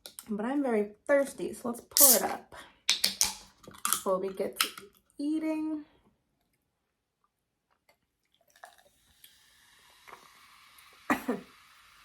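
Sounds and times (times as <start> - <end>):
soda fizzing in a glass: 8.3 - 12.0.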